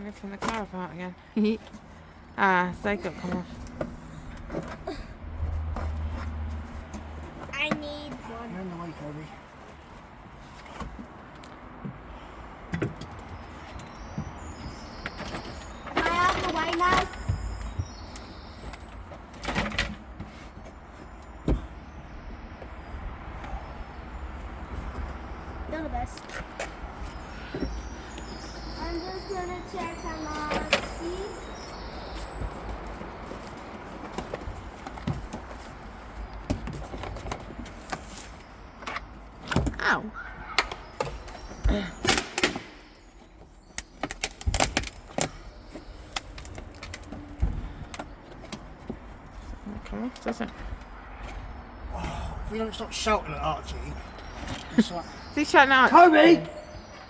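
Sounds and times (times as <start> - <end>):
car interior parts clicking and rattling: 12.7 - 21.9, 27.5 - 39.9, 40.5 - 51.5.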